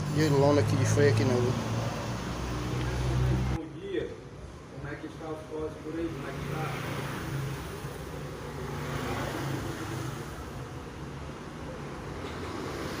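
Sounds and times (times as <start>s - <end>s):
motor vehicle hum: 0.0s - 3.6s.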